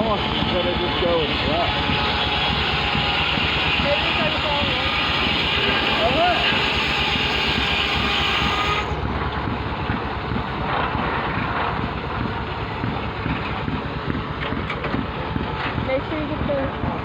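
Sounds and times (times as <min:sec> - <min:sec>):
flat belts flapping over pulleys: 0:00.0 - 0:17.0
line-shaft machinery running: 0:00.0 - 0:17.0.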